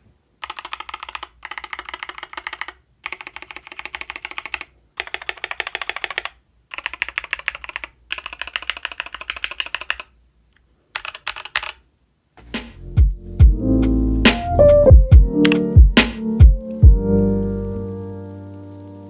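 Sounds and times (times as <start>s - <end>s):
fast typing on mechanical keyboard: 0.4s - 10.1s, 11.0s - 11.8s
music: 12.4s - 19.0s.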